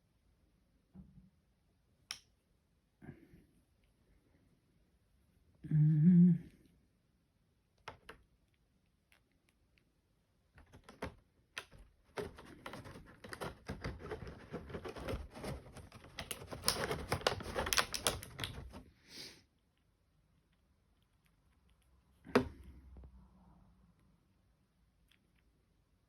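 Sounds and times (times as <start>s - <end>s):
plastic parts clicking and rattling: 10.6s - 18.8s.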